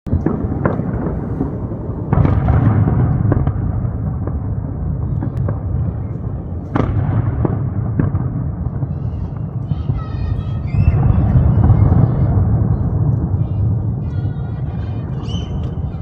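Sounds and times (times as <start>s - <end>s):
fireworks bursts rumbling: 0.0s - 16.0s
crackling firework pops: 0.1s - 10.1s
heavy firework booms: 0.1s - 16.0s.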